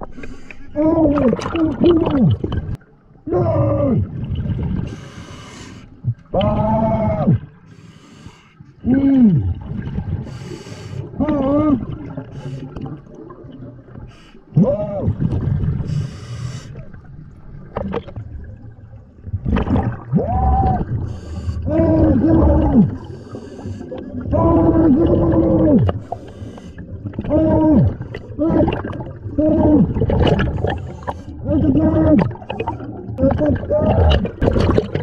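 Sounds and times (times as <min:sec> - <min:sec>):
low bubbling rumble: 0:00.8 - 0:04.9, 0:11.1 - 0:16.0, 0:16.8 - 0:23.2, 0:24.0 - 0:26.1, 0:26.8 - 0:35.0
breathing through scuba regulator: 0:04.8 - 0:06.0, 0:07.7 - 0:08.7, 0:10.2 - 0:11.2, 0:12.2 - 0:12.9, 0:15.8 - 0:16.9, 0:21.0 - 0:21.7, 0:22.9 - 0:24.2, 0:26.0 - 0:27.0.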